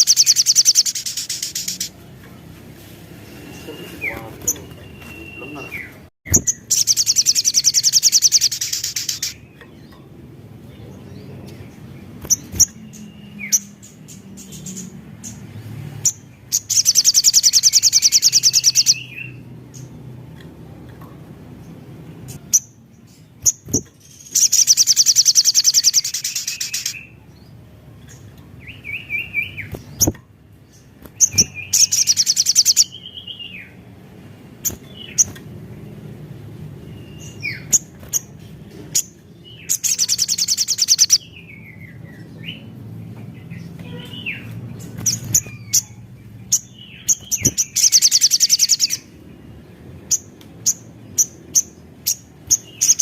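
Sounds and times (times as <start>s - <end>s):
sunbird singing rapid trills: 0.0s - 2.0s, 3.3s - 20.1s, 21.6s - 33.9s, 34.6s - 53.0s
down-slurred bird whistles: 3.5s - 9.4s.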